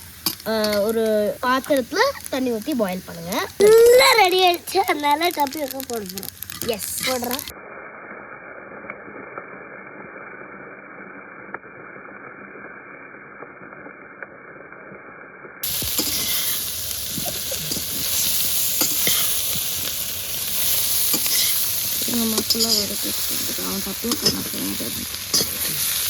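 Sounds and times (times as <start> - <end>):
food sizzling in oil: 0.0 - 7.5, 15.6 - 26.0
spatula scraping a pan: 15.6 - 26.0.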